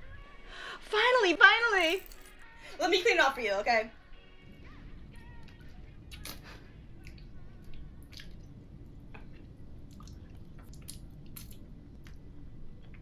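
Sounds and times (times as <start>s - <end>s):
small clicks and drips: 9.1s - 12.2s.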